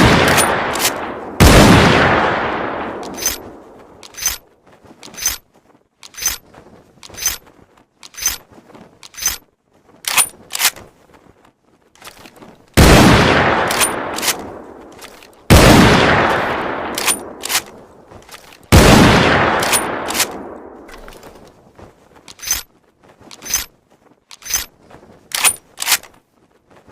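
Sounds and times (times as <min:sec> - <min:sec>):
rifle shots echoing: 0:00.0 - 0:04.3, 0:12.8 - 0:17.8, 0:18.7 - 0:21.1
rifle action clicking: 0:00.3 - 0:01.0, 0:03.0 - 0:03.4, 0:04.0 - 0:04.4, 0:06.0 - 0:06.4, 0:08.0 - 0:08.4, 0:09.0 - 0:09.4, 0:10.0 - 0:10.8, 0:13.7 - 0:15.4, 0:16.9 - 0:18.7, 0:19.6 - 0:21.4, 0:22.3 - 0:22.6, 0:25.3 - 0:26.2.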